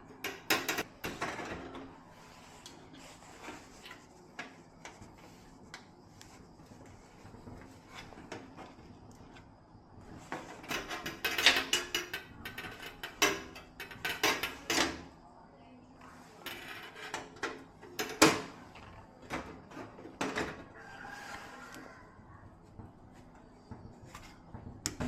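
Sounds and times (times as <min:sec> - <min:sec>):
hard objects clicking and scraping: 0:10.3 - 0:15.0.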